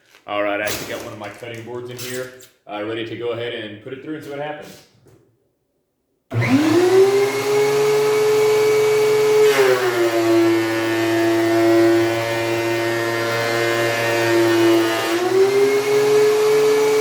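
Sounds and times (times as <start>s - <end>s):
thickness planer motor whine: 6.3s - 17.0s.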